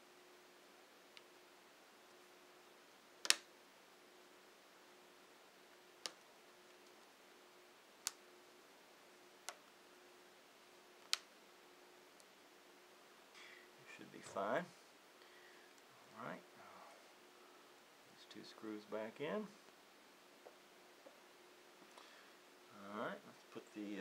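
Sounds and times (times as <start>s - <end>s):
plastic clips snapping into place: 3.2s - 3.5s.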